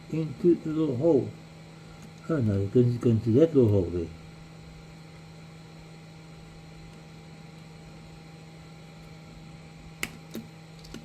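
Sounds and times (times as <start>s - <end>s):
electrical hum: 0.0s - 11.0s
tweezers clicking phone parts: 10.0s - 11.0s.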